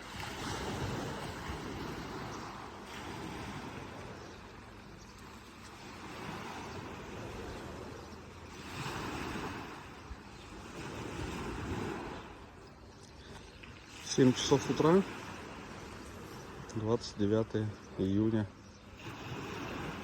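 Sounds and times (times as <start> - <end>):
wind on microphone: 0.0 - 4.6, 5.8 - 12.6
waves washing onto shore: 0.0 - 18.0, 18.9 - 20.0.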